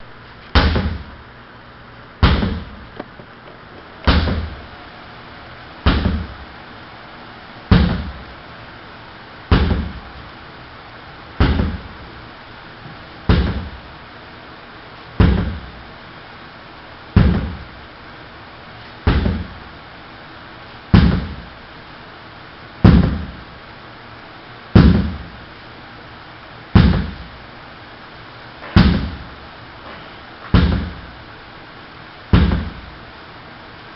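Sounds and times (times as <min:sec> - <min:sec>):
sledgehammer strikes: 0:00.5 - 0:01.1, 0:02.2 - 0:02.8, 0:04.1 - 0:04.6, 0:05.8 - 0:06.4, 0:07.7 - 0:08.2, 0:09.5 - 0:10.0, 0:11.4 - 0:11.9, 0:13.3 - 0:13.8, 0:15.2 - 0:15.7, 0:17.2 - 0:17.7, 0:19.0 - 0:19.6, 0:20.9 - 0:21.4, 0:22.8 - 0:23.4, 0:24.8 - 0:25.3, 0:26.8 - 0:27.3, 0:28.6 - 0:29.3, 0:30.0 - 0:31.0, 0:32.3 - 0:32.9.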